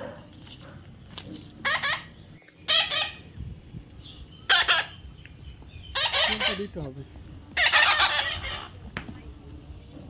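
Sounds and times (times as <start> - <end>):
parrot squawking: 1.6 - 2.1, 2.7 - 3.3, 4.4 - 5.0, 5.9 - 6.8, 7.5 - 8.8.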